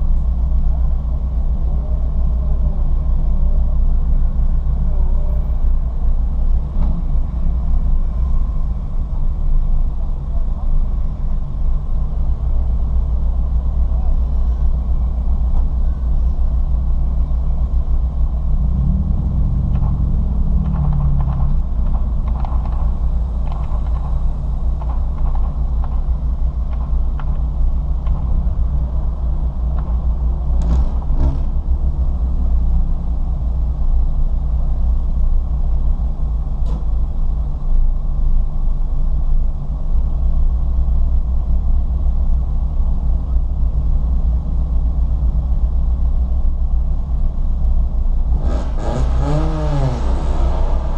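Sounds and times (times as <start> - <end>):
road drone: 0.0 - 50.9
car engine revving: 18.4 - 26.0, 48.3 - 50.9.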